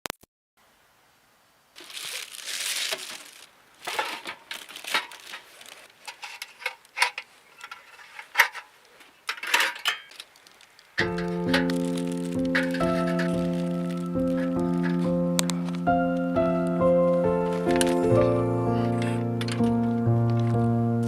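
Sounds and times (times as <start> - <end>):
crinkling and rustling: 1.8 - 20.8.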